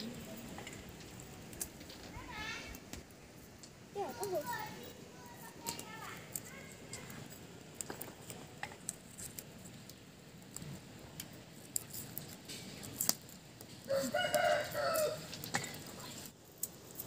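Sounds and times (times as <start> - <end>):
faint clicks and knocks: 5.6 - 13.8
rooster crowing: 13.8 - 15.3.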